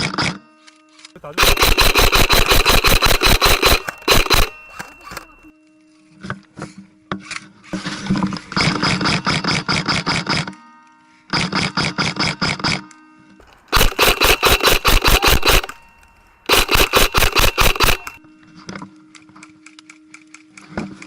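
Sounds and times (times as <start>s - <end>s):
airsoft guns firing: 1.4s - 5.5s, 13.5s - 18.2s.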